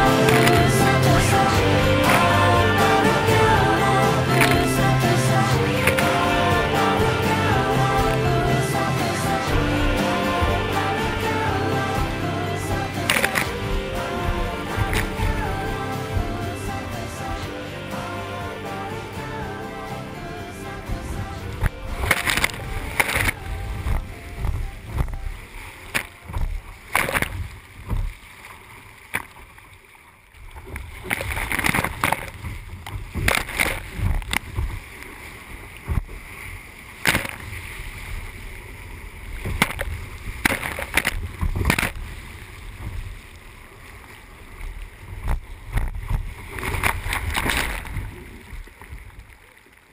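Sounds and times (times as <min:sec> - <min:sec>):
low surf rumble: 0:00.0 - 0:25.8
water splashing around kayak: 0:00.0 - 0:49.9.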